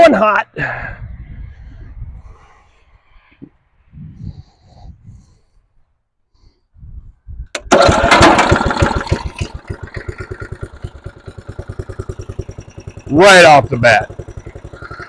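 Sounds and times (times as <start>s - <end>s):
mower engine starting and running: 7.5s - 15.0s.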